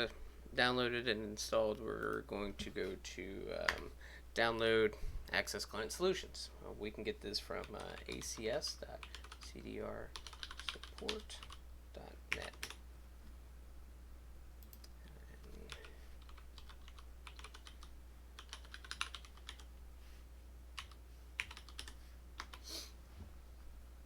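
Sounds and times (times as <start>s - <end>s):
steady low hum: 0.0s - 24.0s
keyboard typing: 7.6s - 9.5s, 10.1s - 11.6s, 12.3s - 12.8s, 14.6s - 19.7s, 20.8s - 22.6s.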